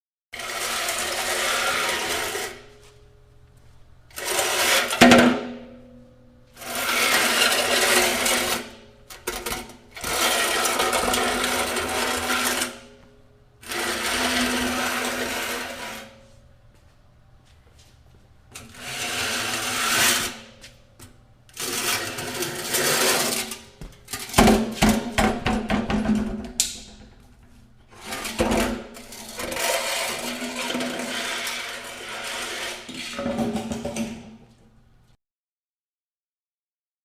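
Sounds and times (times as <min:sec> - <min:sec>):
box scraping across floor: 0:00.4 - 0:02.9, 0:13.6 - 0:16.4, 0:18.6 - 0:20.7, 0:21.6 - 0:23.6, 0:27.9 - 0:33.6.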